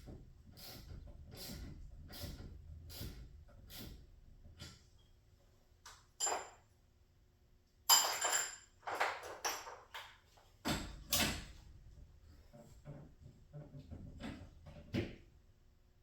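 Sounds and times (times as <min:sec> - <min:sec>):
metal tools clinking and clanking: 0:06.2 - 0:06.6, 0:07.9 - 0:10.1.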